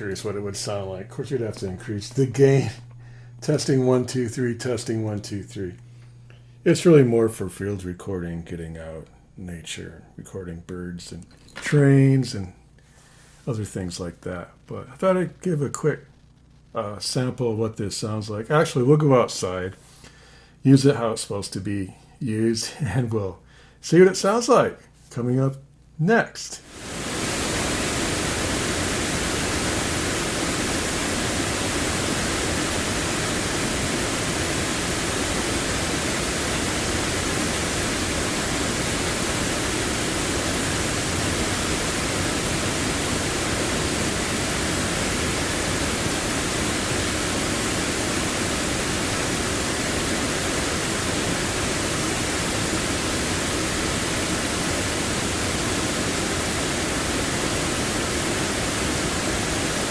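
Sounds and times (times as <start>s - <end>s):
waterfall roar: 26.7s - 59.9s.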